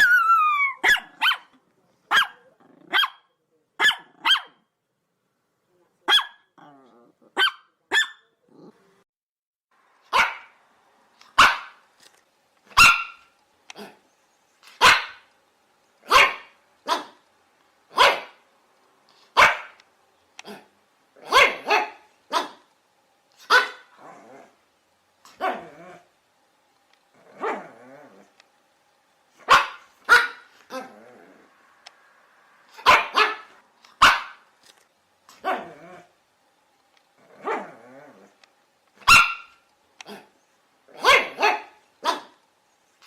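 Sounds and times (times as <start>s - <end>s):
small dog barking in high yaps: 0.0s - 1.5s, 2.1s - 4.6s, 6.1s - 6.5s, 7.4s - 8.3s, 10.1s - 10.6s, 11.4s - 11.8s, 12.7s - 13.3s, 14.8s - 15.2s, 16.0s - 17.2s, 17.9s - 18.4s, 19.4s - 19.8s, 21.2s - 22.6s, 23.4s - 23.9s, 29.4s - 30.5s, 32.8s - 34.4s, 39.0s - 39.6s, 41.0s - 42.4s.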